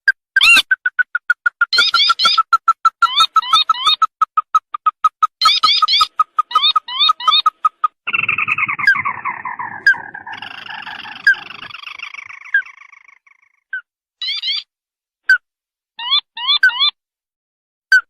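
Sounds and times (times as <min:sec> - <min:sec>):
crake calls with falling trill: 0:00.4 - 0:13.6.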